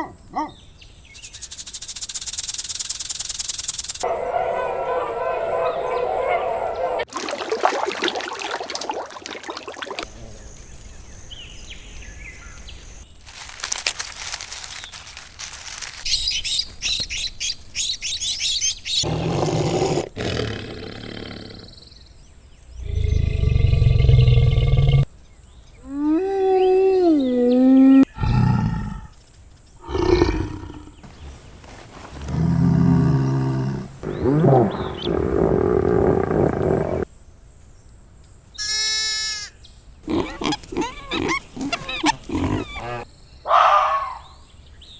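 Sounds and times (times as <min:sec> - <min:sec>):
rapid chirping: 0:00.0 - 0:04.0, 0:40.0 - 0:43.1
big cat roar: 0:19.0 - 0:21.9, 0:22.8 - 0:25.1, 0:28.1 - 0:29.2, 0:29.8 - 0:31.1, 0:32.1 - 0:37.1, 0:40.0 - 0:43.1
rising and falling animal call: 0:32.1 - 0:37.1, 0:38.6 - 0:44.3.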